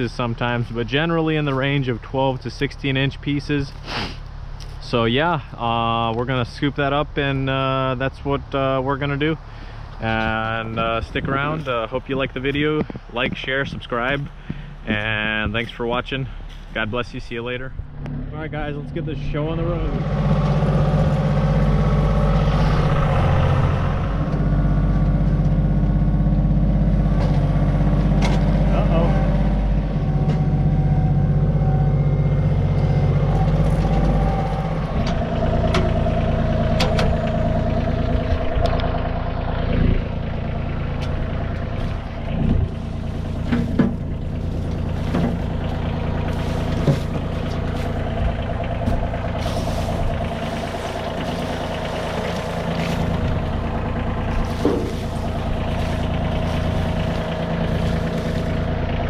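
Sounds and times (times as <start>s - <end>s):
tractor engine running: 0.0s - 59.0s
firewood tumbling and knocking: 41.7s - 58.8s.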